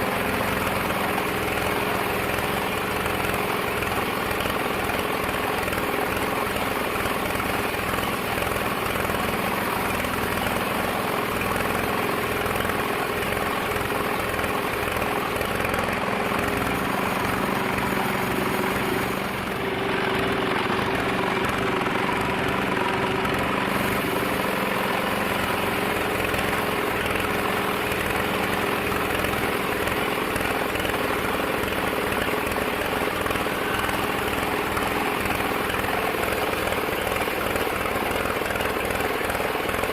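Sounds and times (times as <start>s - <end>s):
bandsaw machinery droning: 0.0s - 39.9s.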